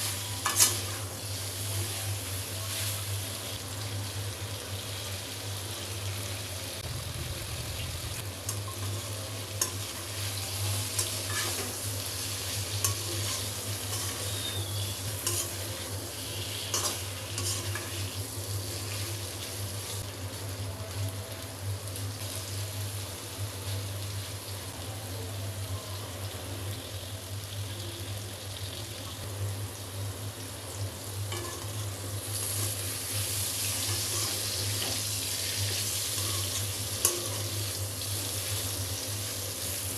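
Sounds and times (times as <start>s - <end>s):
vegetables sizzling in oil: 0.0s - 39.9s
low steady hum: 6.6s - 26.6s.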